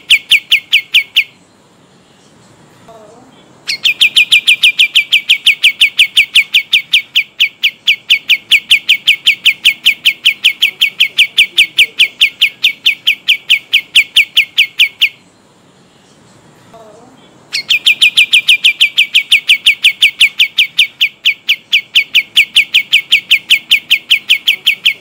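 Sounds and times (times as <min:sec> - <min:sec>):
songbird rolling trill: 0:17.5 - 0:25.0.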